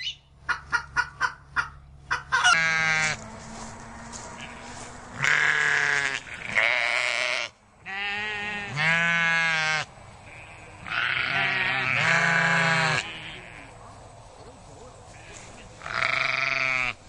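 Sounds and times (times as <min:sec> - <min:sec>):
sheep or goats bleating: 0:02.5 - 0:03.2, 0:04.1 - 0:13.8, 0:15.1 - 0:17.0.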